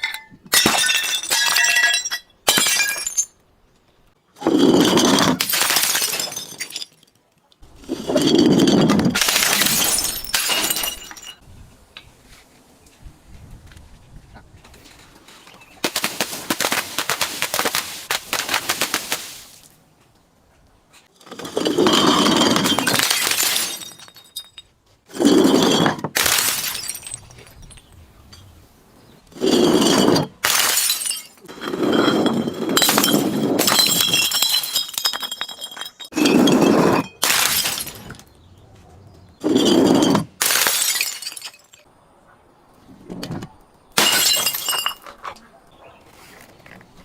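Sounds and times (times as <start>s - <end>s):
glass bottles smashing: 0.0s - 3.4s, 4.5s - 7.1s, 7.8s - 11.4s, 21.5s - 28.5s, 29.4s - 38.3s, 39.4s - 41.9s, 44.0s - 45.1s.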